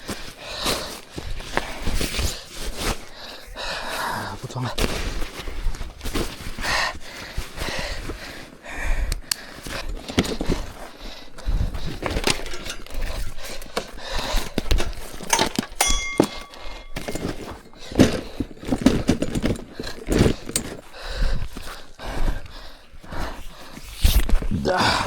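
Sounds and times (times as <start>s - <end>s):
fishing gear knocking and clattering: 9.1s - 22.0s
metallic clink: 12.0s - 20.8s.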